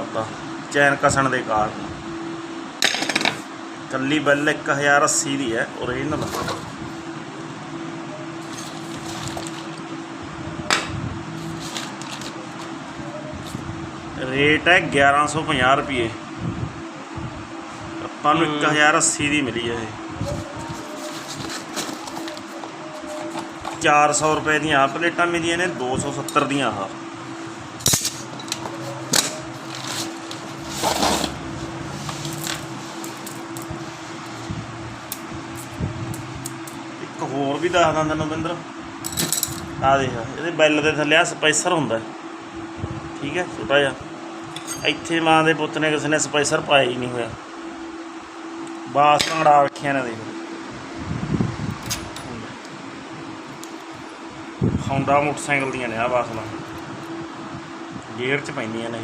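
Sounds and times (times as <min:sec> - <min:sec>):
steady background hum: 0:00.0 - 0:59.0
scraping rustle: 0:06.1 - 0:07.0, 0:08.4 - 0:09.9, 0:11.4 - 0:13.6, 0:20.2 - 0:23.9, 0:27.4 - 0:34.6.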